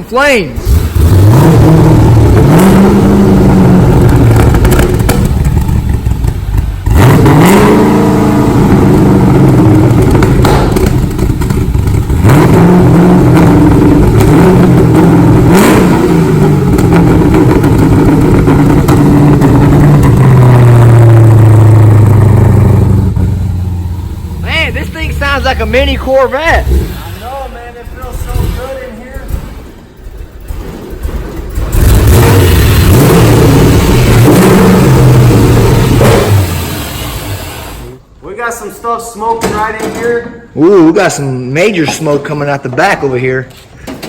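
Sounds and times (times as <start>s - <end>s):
car engine revving: 0.6s - 38.2s.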